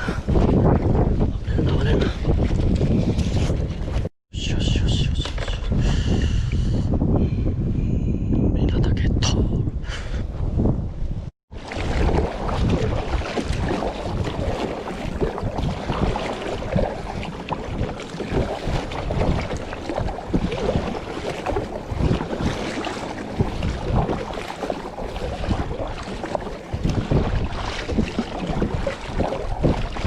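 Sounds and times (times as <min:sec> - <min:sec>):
choppy sea water around kayak: 0:00.0 - 0:04.1, 0:11.5 - 0:30.0
wind buffeting microphone: 0:00.0 - 0:30.0.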